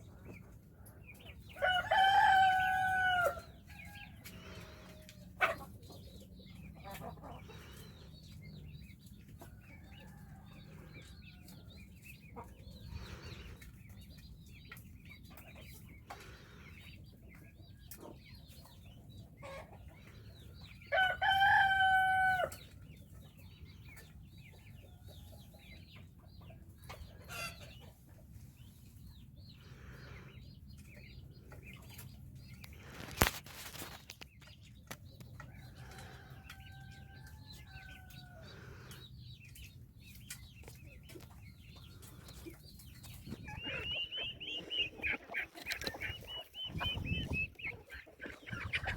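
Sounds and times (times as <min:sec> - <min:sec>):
chickens clucking: 0:00.0 - 0:48.9
rooster crowing: 0:01.6 - 0:03.4.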